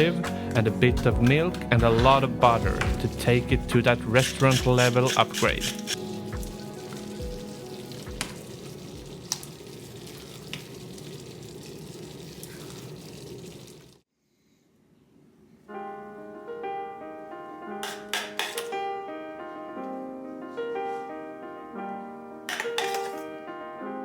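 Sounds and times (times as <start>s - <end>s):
background music: 0.0s - 9.6s, 15.7s - 24.0s
piano tune: 0.0s - 10.0s, 15.7s - 24.0s
food sizzling in a frying pan: 5.9s - 14.0s.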